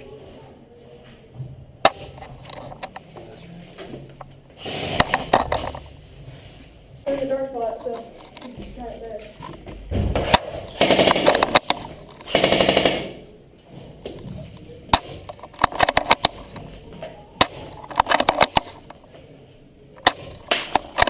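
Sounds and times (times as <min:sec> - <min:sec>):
airsoft guns firing: 0:10.2 - 0:13.2.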